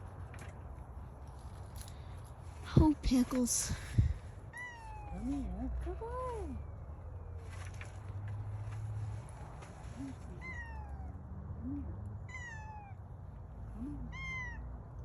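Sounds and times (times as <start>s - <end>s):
cat meowing: 4.5s - 5.6s, 10.3s - 11.2s, 12.2s - 13.1s, 13.8s - 14.7s.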